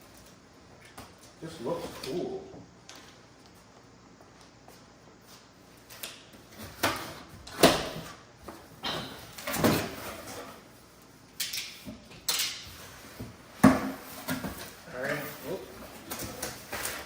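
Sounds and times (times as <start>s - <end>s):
cardboard box knocks and thumps: 13.6s - 14.7s.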